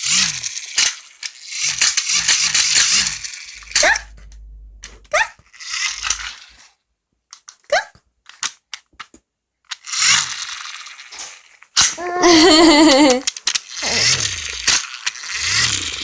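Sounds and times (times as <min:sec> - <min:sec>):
short rising squeaks: 0:02.4 - 0:06.7
wavering drawn-out tone: 0:02.8 - 0:06.4
voice making breathy hissing: 0:12.0 - 0:13.2, 0:13.8 - 0:14.8, 0:15.4 - 0:16.0.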